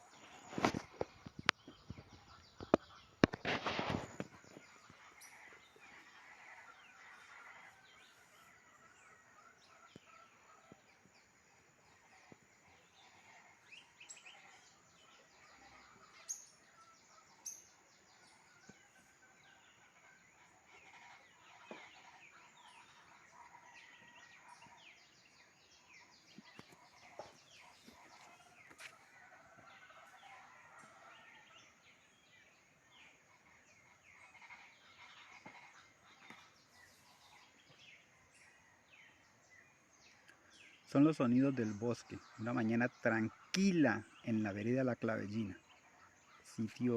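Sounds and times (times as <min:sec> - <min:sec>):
sharp bird calls: 0:00.0 - 0:11.0
forest birds calling: 0:00.0 - 0:46.9.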